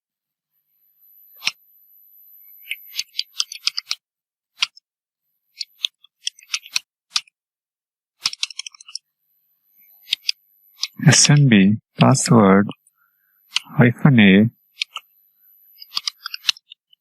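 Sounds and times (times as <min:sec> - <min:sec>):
keyboard typing: 0:02.4 - 0:04.0, 0:08.2 - 0:09.1, 0:09.9 - 0:11.4, 0:14.7 - 0:17.0.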